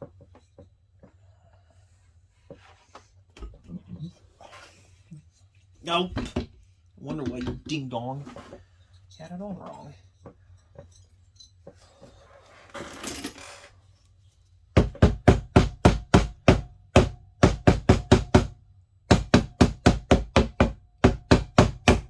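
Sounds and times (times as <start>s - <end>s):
hammer tapping on metal: 14.8s - 22.0s.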